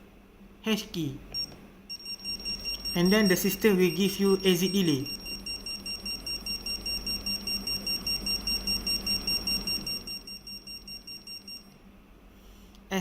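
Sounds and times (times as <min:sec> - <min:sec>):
keypad beeping: 0:01.3 - 0:11.7.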